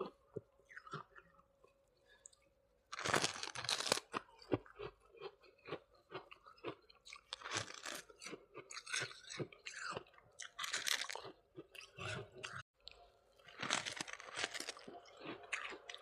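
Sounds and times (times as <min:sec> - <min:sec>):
person chewing frost: 0:00.0 - 0:01.4, 0:02.2 - 0:16.0
crunchy bite: 0:02.9 - 0:05.8, 0:06.6 - 0:12.6, 0:13.5 - 0:16.0.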